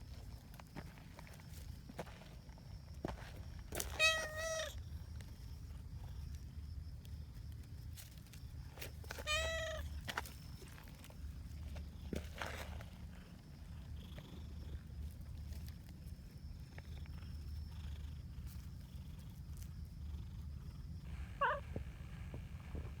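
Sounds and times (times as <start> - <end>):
cat meowing: 3.9 - 4.8, 9.2 - 9.9, 21.2 - 21.8
cat purring: 16.6 - 23.0.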